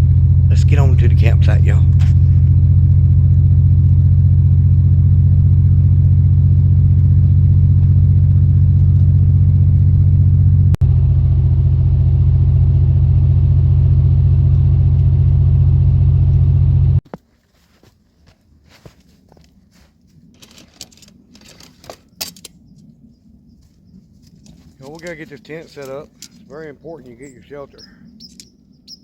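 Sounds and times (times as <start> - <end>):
engine and road noise drone: 0.0 - 17.0.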